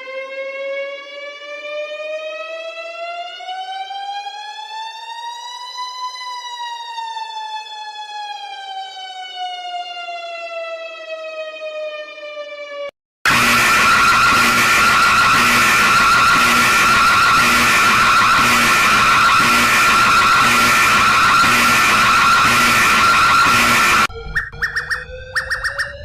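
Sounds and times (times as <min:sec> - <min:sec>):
siren wailing: 0:00.0 - 0:26.0
loud burst of noise: 0:13.2 - 0:24.1.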